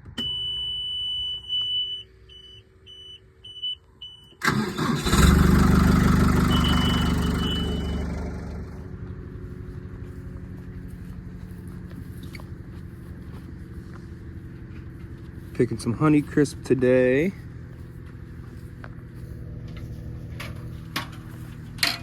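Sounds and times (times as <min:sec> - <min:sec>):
engine starter cranking: 0:04.4 - 0:08.4
diesel engine idling: 0:04.4 - 0:22.0
high-pitched warning beeper: 0:06.4 - 0:08.3.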